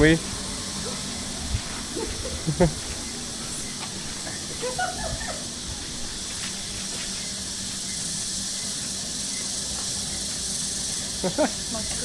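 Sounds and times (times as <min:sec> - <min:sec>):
high-pitched outdoor hiss: 0:00.0 - 0:12.0.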